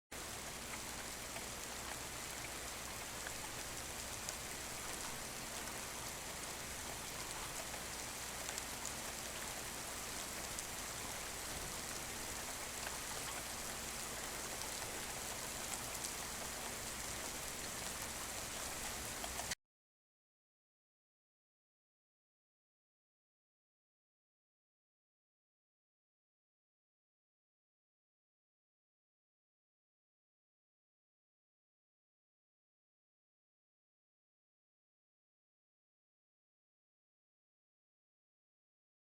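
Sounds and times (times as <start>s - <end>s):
steady rain falling: 0.2s - 19.6s.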